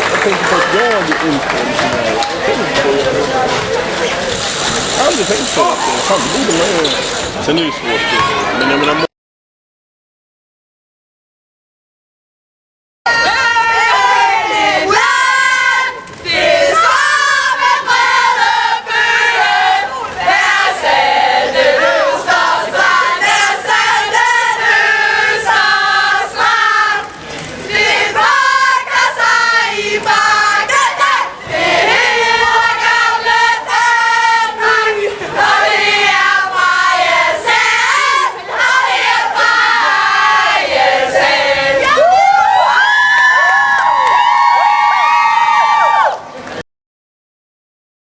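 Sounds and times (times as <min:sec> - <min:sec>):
girls singing in unison: 0:13.1 - 0:27.1, 0:27.7 - 0:42.1.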